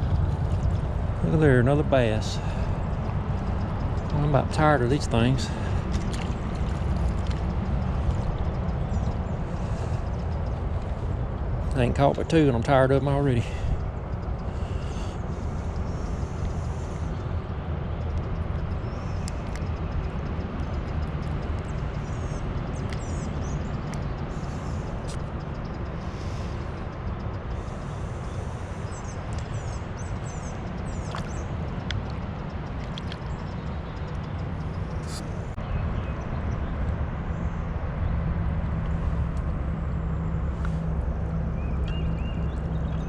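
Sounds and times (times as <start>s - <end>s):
bird chirps: 32.8s - 36.3s, 41.5s - 43.0s.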